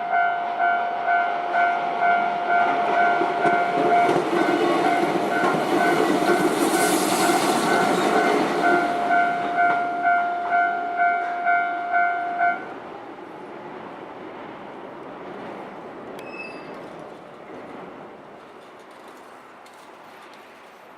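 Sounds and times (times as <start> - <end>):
crossing warning bell ringing: 0.0 - 12.8, 16.2 - 16.8
train passing: 0.0 - 20.9.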